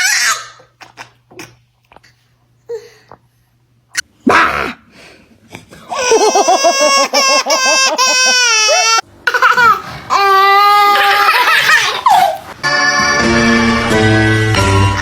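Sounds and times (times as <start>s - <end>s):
baby crying: 5.9s - 12.5s.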